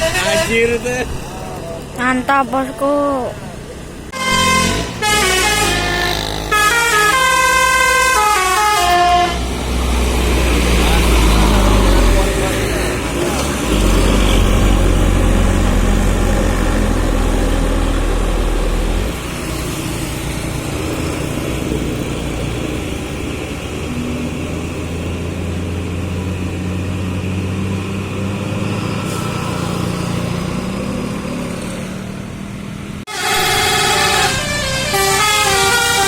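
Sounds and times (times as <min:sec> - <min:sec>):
multi-tone bus horn melody: 0:00.0 - 0:00.7, 0:04.1 - 0:09.6, 0:33.1 - 0:36.0
bus engine rumbling: 0:00.0 - 0:36.0.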